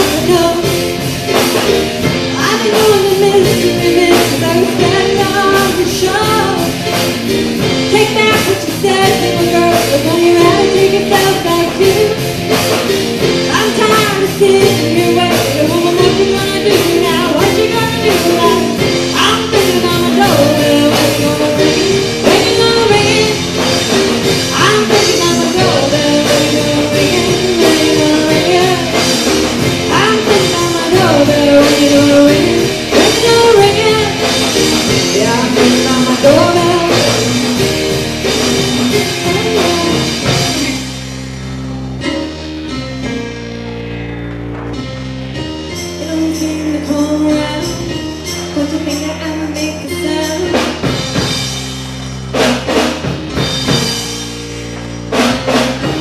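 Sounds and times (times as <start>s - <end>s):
live rock band playing: 0.0s - 56.0s
person singing: 2.3s - 6.9s, 7.9s - 12.3s, 13.5s - 23.7s, 24.4s - 37.7s, 38.7s - 40.8s.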